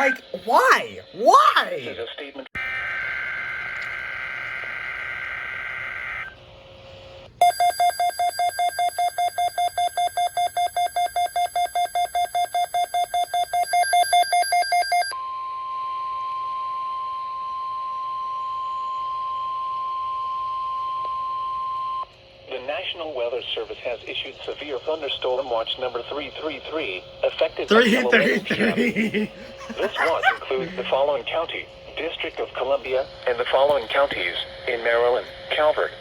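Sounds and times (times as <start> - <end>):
rapid electronic alarm beeps: 7.4 - 15.1.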